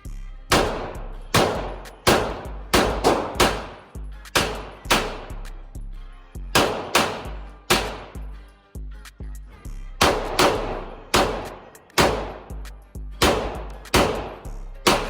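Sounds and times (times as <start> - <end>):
background music with deep bass: 0.0 - 15.0
pistol shots with ringing tail: 0.5 - 5.3, 6.6 - 8.2, 10.0 - 12.6, 13.2 - 15.0.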